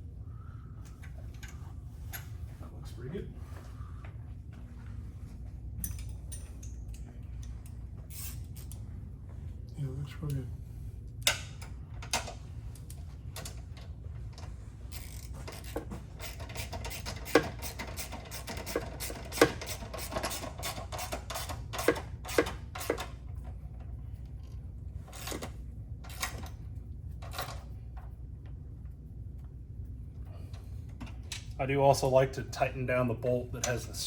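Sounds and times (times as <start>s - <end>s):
ratchet wrench clicking: 14.9s - 23.0s.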